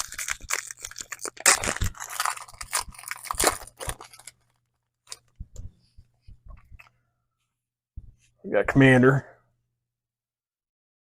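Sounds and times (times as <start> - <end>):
foil wrapper crinkling and tearing: 0.0 - 5.3.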